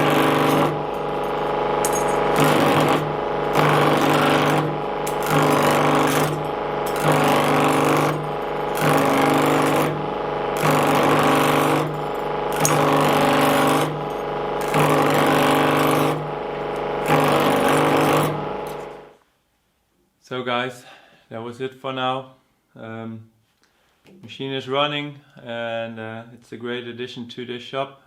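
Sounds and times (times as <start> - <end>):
machine motor humming: 0.0 - 19.1.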